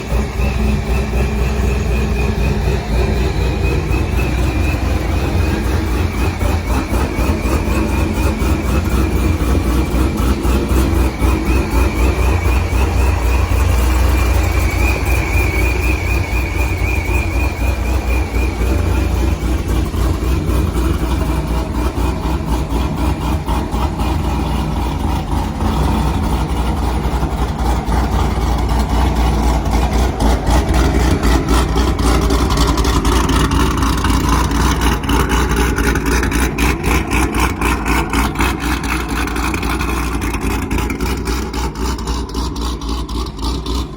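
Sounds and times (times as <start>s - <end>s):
car engine idling choppy: 0.0s - 43.9s.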